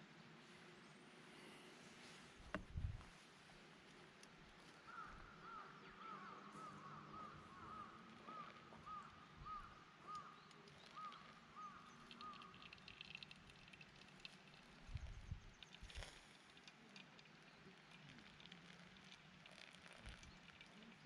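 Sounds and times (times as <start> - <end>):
faint crackles: 0.4 - 21.0
bird calling faintly: 4.6 - 21.0.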